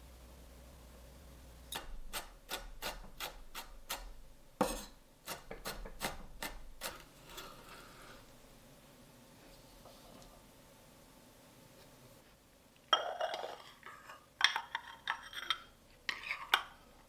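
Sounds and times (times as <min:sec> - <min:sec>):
knife chopping on cutting board: 0:01.8 - 0:07.4.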